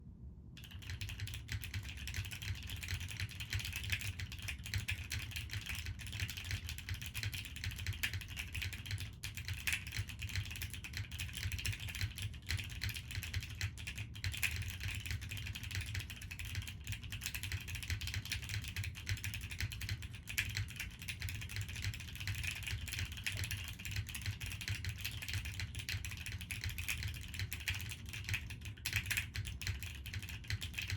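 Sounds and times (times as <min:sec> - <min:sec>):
mechanical keyboard typing: 0:00.6 - 0:30.9.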